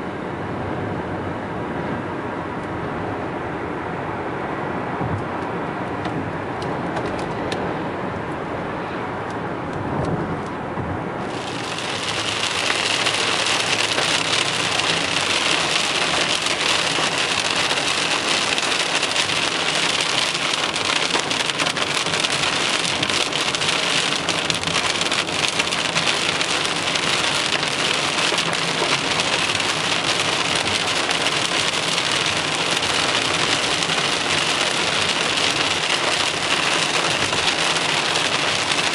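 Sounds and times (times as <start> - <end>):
heavy rain and hail on car: 11.2 - 38.9.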